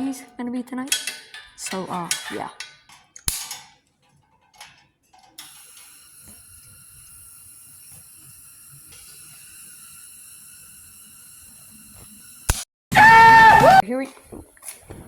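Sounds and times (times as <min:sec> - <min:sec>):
heater click: 0:00.8 - 0:03.7, 0:04.6 - 0:12.7
heater burner hissing: 0:04.6 - 0:13.8.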